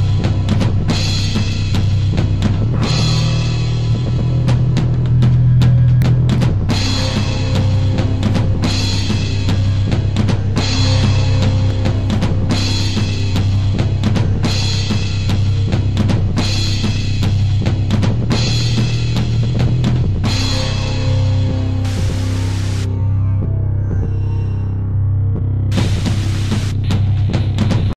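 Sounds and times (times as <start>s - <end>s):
electronic drum beat: 0.0s - 22.9s, 25.4s - 27.9s
deep bass: 0.0s - 27.9s
bright cymbal washes: 6.7s - 19.6s, 20.2s - 22.9s, 25.7s - 27.2s.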